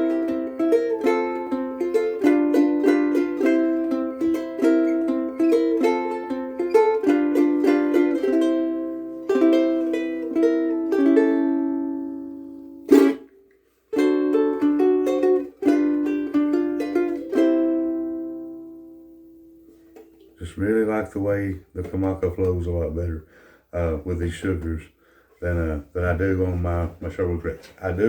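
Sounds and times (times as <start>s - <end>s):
ukulele picked and strummed: 0.0s - 20.4s, 21.2s - 22.7s.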